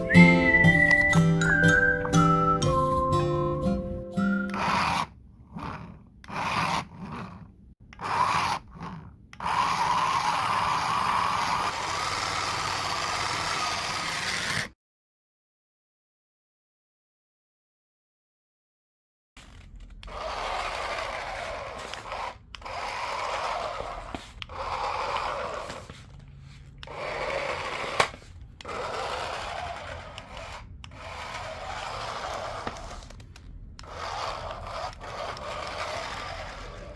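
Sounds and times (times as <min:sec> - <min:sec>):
toy car motor whirring: 0:04.3 - 0:14.8, 0:19.4 - 0:36.9.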